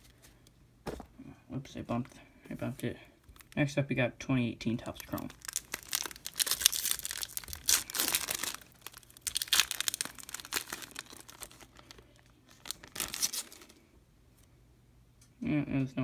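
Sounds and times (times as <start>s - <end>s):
wrapper tearing and crinkling: 3.2s - 3.6s, 4.8s - 13.8s.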